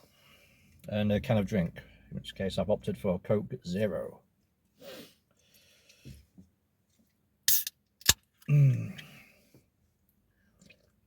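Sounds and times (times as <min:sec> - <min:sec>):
man vocal sound: 0:08.5 - 0:09.0.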